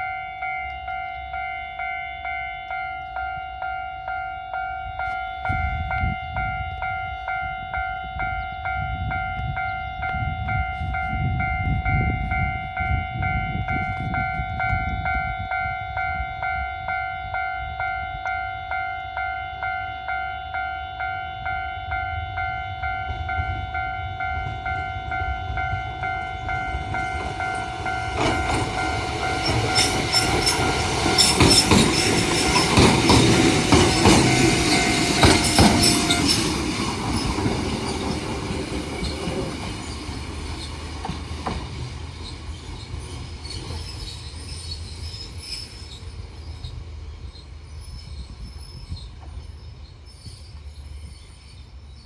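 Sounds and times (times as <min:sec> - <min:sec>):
crossing warning bell ringing: 0:00.0 - 0:46.4
train rumble: 0:00.0 - 0:52.0
train wheels clacking over rail joints: 0:27.0 - 0:44.2
wheel squeal: 0:42.1 - 0:52.0.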